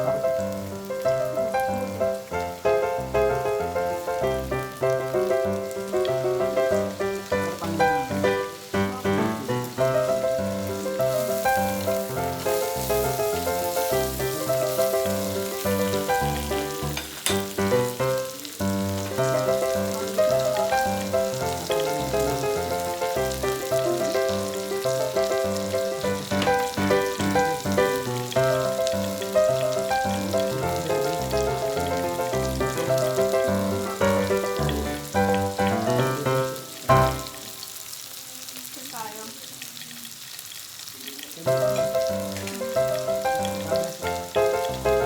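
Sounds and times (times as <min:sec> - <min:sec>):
meat sizzling on a grill: 0:00.0 - 0:45.0.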